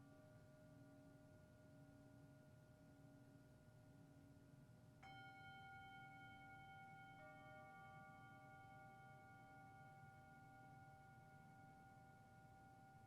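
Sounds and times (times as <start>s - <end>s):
bowl struck and ringing: 5.0s - 13.0s
singing bowls ringing: 5.0s - 13.0s.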